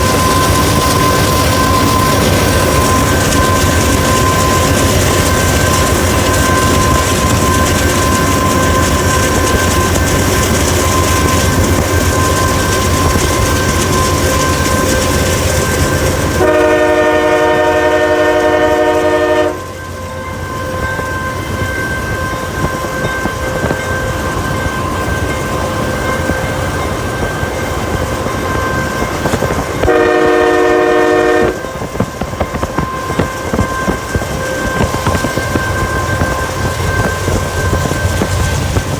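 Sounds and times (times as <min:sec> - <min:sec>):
train rumbling on rails: 0:00.0 - 0:38.9
train air horn blast: 0:16.4 - 0:19.7, 0:29.8 - 0:31.7.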